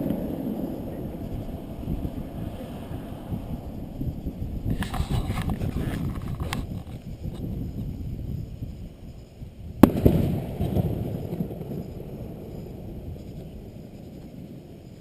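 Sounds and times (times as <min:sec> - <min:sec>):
low rumble of fireworks: 0:00.0 - 0:15.0
firework shell bang: 0:09.8 - 0:11.9.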